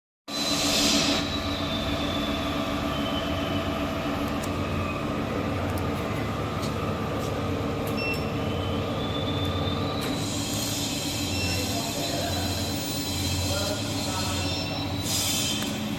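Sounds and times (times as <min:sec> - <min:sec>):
faint high whining tones: 0:08.0 - 0:15.9.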